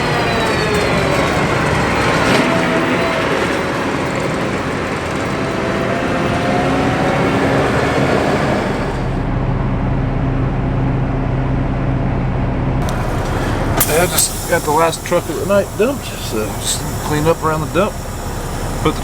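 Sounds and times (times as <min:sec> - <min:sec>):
heavy vehicle engine running: 0:00.0 - 0:19.0
dull low hum: 0:08.5 - 0:19.0.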